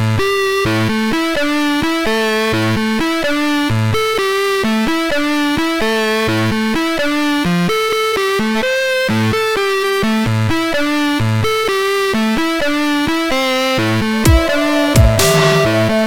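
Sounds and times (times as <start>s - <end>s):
repeating bass line: 14.2s - 16.0s
synthesizer melody: 14.2s - 16.0s.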